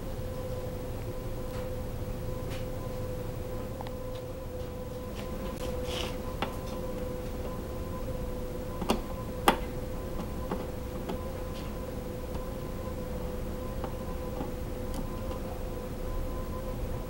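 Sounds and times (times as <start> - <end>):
faint hum: 0.0 - 17.0
clicks and taps of tools: 8.8 - 11.7.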